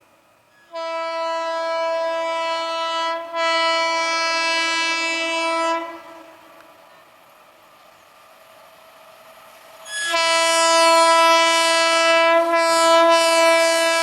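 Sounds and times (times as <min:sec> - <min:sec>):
locomotive horn blasts: 0:00.7 - 0:06.7, 0:09.8 - 0:14.0.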